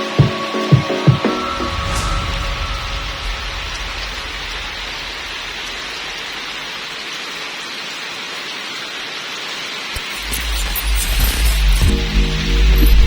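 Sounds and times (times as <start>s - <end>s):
low rumble: 1.5s - 6.6s
steady rain: 1.6s - 13.0s.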